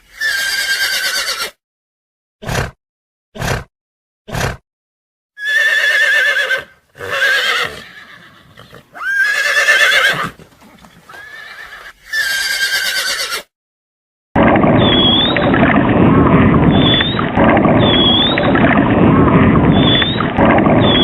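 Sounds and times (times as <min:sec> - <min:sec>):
animal quavering cries: 0:05.4 - 0:13.5.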